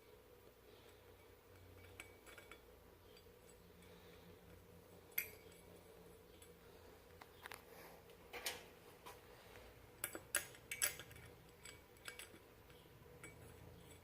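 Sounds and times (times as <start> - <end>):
light metal clicks and taps: 10.0 - 14.0.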